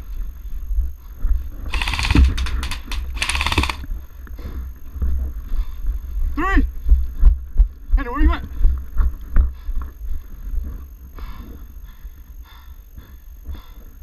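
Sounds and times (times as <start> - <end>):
single gun clicks: 1.7 - 3.8
airsoft gun full-auto fire: 1.7 - 3.9.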